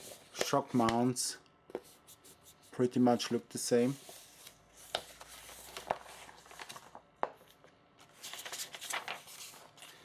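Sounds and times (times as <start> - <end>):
plastic packaging rustling: 4.9 - 10.0.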